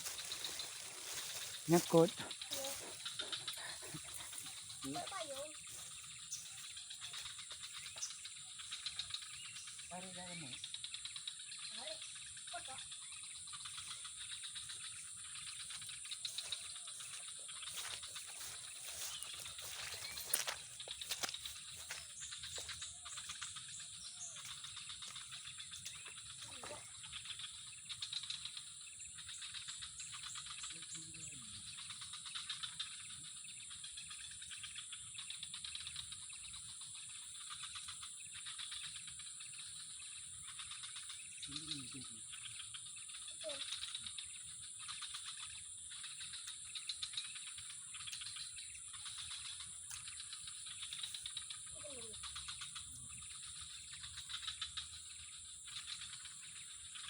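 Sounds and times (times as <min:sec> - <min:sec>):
faint gliding calls: 0:00.0 - 0:09.4, 0:48.3 - 0:57.0
insects droning: 0:00.0 - 0:57.0.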